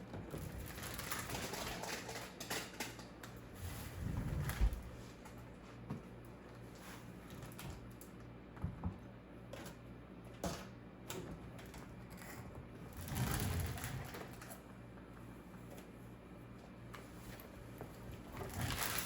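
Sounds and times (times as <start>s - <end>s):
rustling noise: 3.5s - 5.2s.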